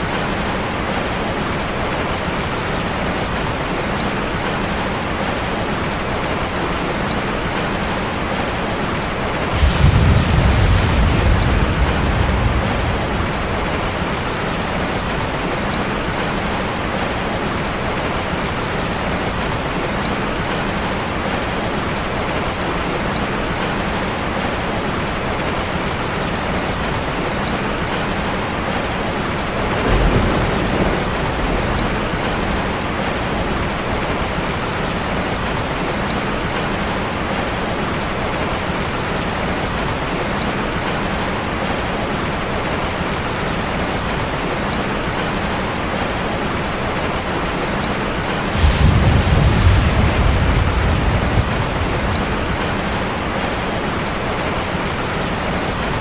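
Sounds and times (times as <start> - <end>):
steady rain: 0.0 - 56.0
thunder rumbling: 9.3 - 16.3, 28.4 - 35.5, 48.2 - 56.0.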